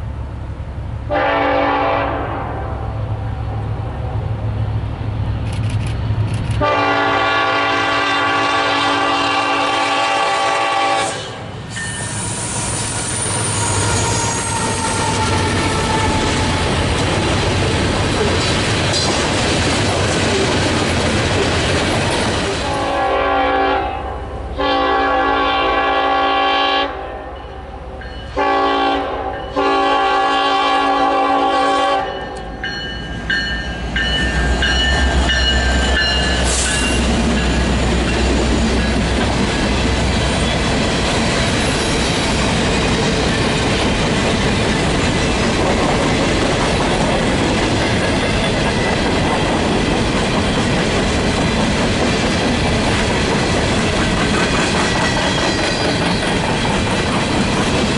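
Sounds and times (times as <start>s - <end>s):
train rolling noise: 0.0s - 57.9s
train air horn blasts: 1.1s - 3.6s, 6.6s - 16.6s, 22.6s - 32.4s.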